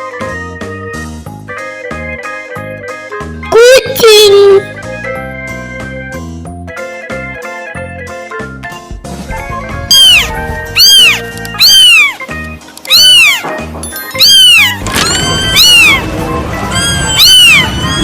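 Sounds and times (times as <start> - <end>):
background music: 0.0 - 18.0
cat meowing: 9.9 - 12.2, 12.9 - 13.5, 14.2 - 18.0.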